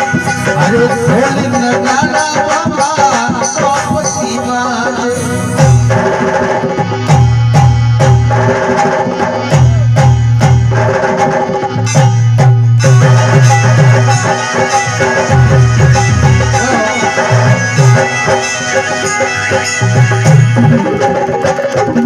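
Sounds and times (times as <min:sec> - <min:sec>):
hand drums beating: 0:00.0 - 0:22.0
held melody line: 0:00.0 - 0:22.0.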